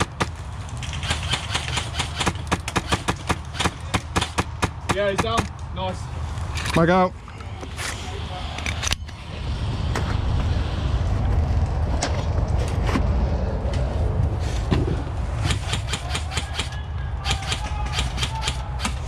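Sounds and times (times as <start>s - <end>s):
steady low rumble: 5.5s - 16.3s.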